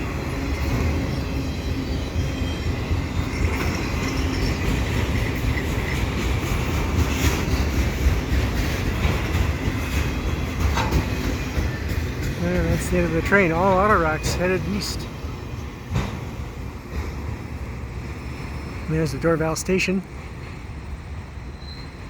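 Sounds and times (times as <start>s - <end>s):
steel wheels rumbling on rail: 0.0s - 22.0s
clicks over rail joints: 6.4s - 14.6s.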